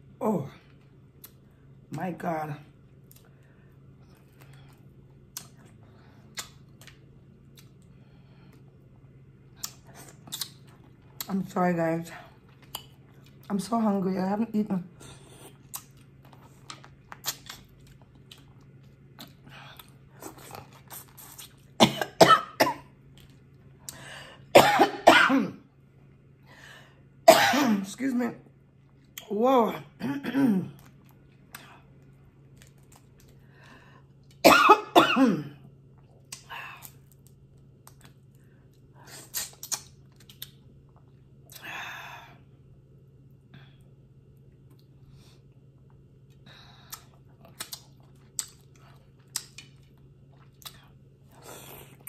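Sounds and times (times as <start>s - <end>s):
chewing: 4.0s - 7.9s, 9.6s - 11.3s, 15.0s - 21.8s, 36.0s - 41.6s, 45.8s - 52.0s
faint mouth and eating clicks: 4.0s - 8.6s, 9.5s - 11.4s, 12.4s - 13.6s, 15.5s - 21.7s, 35.9s - 41.7s, 44.3s - 45.0s, 45.8s - 52.0s
woman coughing: 21.8s - 22.9s, 24.5s - 25.6s, 27.3s - 27.9s, 30.0s - 30.8s, 34.4s - 35.6s.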